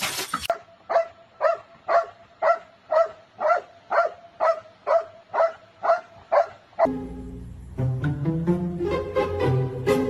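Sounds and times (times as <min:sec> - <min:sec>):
dog barking: 0:00.5 - 0:06.9.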